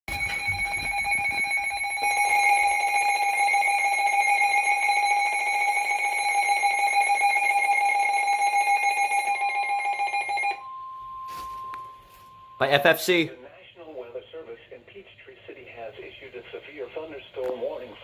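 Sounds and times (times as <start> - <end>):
two-tone alert tone: 8.9 - 12.6.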